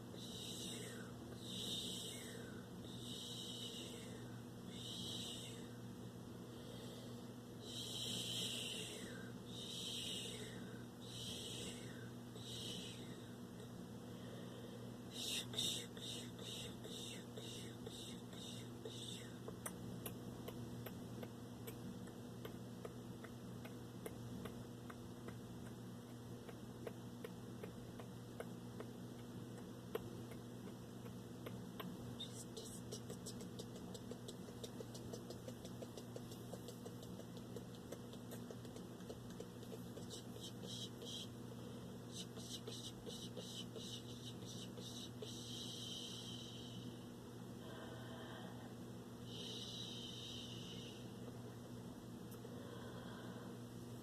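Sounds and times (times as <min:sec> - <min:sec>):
steady low hum: 0:00.0 - 0:54.0
breathy mouth sounds: 0:00.1 - 0:05.8, 0:15.1 - 0:41.4, 0:42.1 - 0:46.9.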